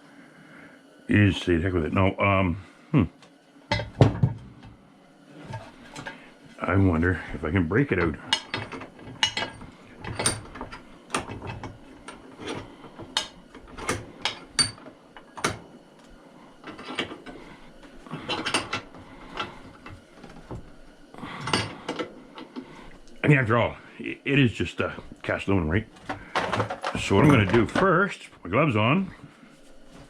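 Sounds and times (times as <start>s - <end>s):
hand tools clicking on metal: 8.0s - 15.6s, 18.2s - 20.0s
scraping rattles: 8.0s - 15.6s.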